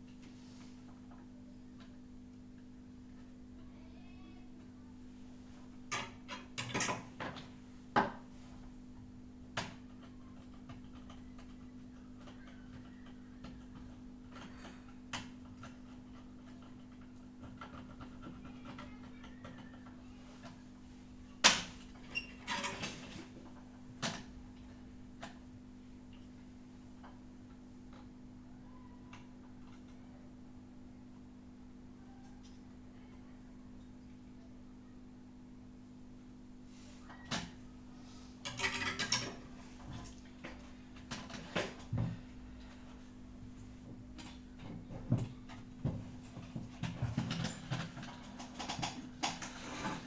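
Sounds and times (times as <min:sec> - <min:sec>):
low electrical hum: 0:00.0 - 0:50.0.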